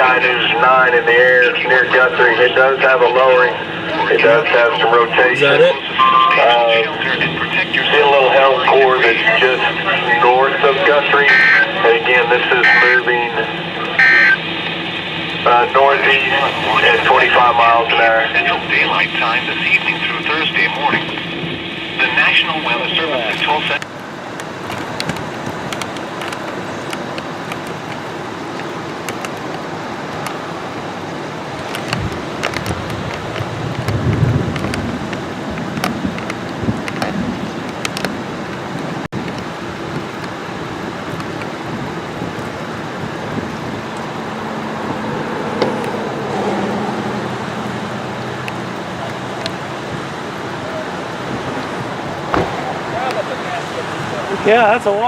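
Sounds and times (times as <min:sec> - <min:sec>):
storm wind rushing: 0:00.0 - 0:48.9
motor vehicle hum: 0:00.0 - 0:55.0
raindrops ticking: 0:23.3 - 0:46.4, 0:47.0 - 0:54.2.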